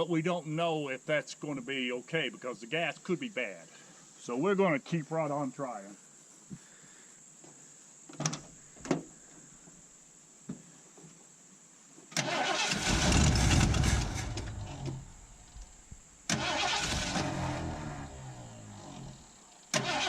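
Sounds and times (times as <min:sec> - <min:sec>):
engine cranking without starting: 0:12.2 - 0:20.0.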